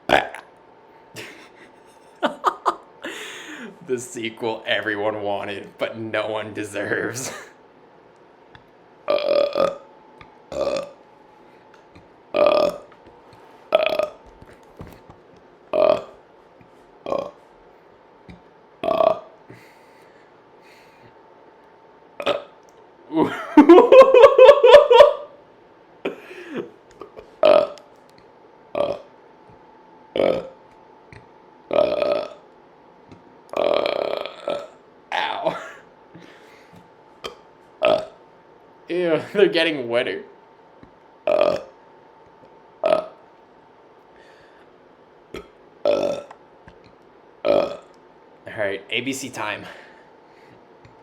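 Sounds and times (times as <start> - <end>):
person burping: 0.0 - 0.5, 9.1 - 9.8, 10.5 - 11.0, 12.3 - 12.9, 13.7 - 14.2, 15.7 - 16.2, 17.0 - 17.4, 18.8 - 19.3, 22.2 - 22.5, 26.1 - 27.8, 28.7 - 29.1, 30.2 - 30.6, 31.7 - 32.4, 33.5 - 35.9, 37.2 - 38.2, 41.3 - 41.8, 42.8 - 43.2, 45.4 - 46.4, 47.4 - 47.9
person saying ow: 35.1 - 35.7.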